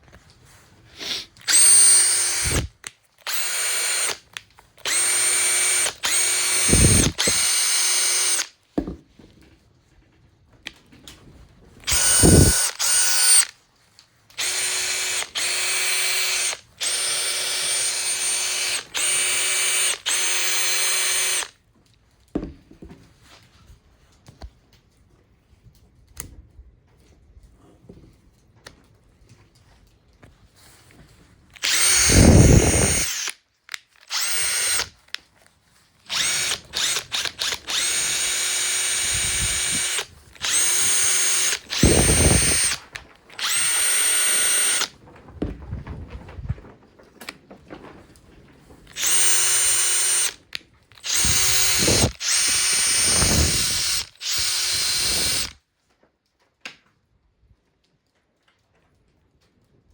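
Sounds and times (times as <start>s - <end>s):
impact driver motor whining: 1.0s - 4.2s, 4.8s - 8.5s, 11.8s - 13.5s, 14.4s - 21.5s, 31.6s - 33.4s, 34.0s - 35.0s, 36.1s - 44.9s, 48.9s - 50.4s, 51.0s - 55.6s.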